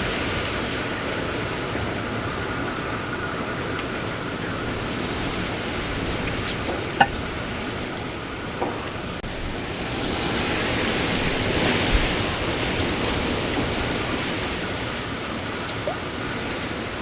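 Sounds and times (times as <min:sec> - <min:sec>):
wind and rain rushing: 0:00.0 - 0:17.0.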